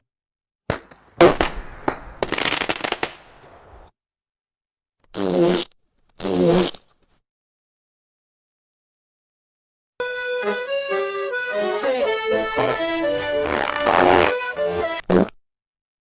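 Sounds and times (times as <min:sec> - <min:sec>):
long sputtering fart: 0:05.1 - 0:06.9, 0:11.8 - 0:15.4
short buzzy farts: 0:05.1 - 0:06.9, 0:12.3 - 0:15.4.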